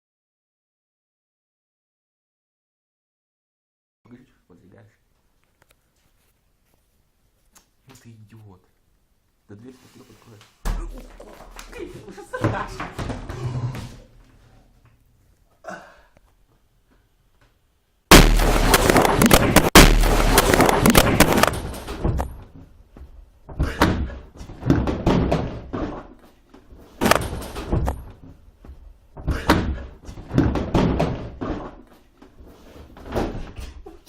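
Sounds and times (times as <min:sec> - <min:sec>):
firecracker bang: 0:18.1 - 0:22.2.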